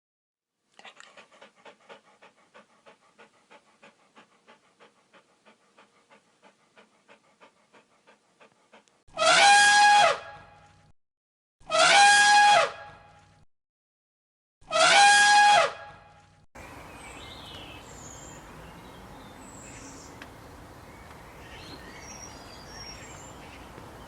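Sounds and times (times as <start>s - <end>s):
animal panting: 0.8s - 9.0s.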